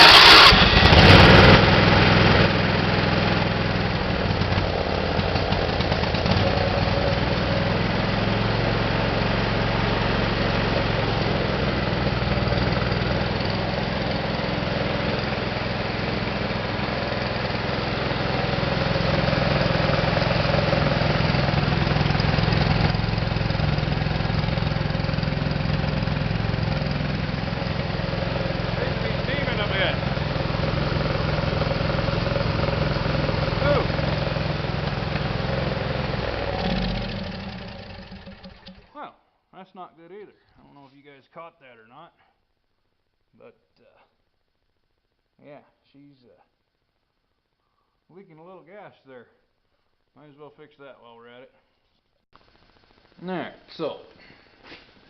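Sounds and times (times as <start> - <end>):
tractor engine starting and running: 0.0 - 39.0.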